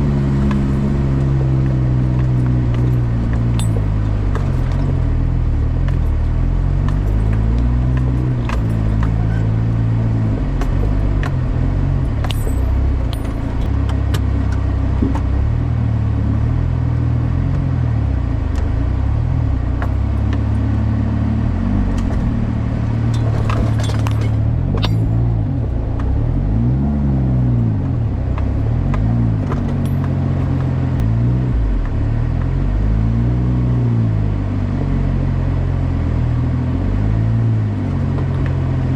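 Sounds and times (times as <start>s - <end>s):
car engine while driving: 0.0s - 38.9s
road noise: 0.0s - 38.9s
light clicks and rattles: 0.4s - 15.4s, 28.3s - 31.0s.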